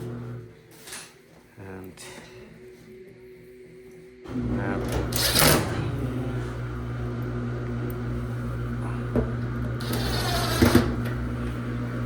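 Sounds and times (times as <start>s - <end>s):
motor humming: 4.3s - 12.0s.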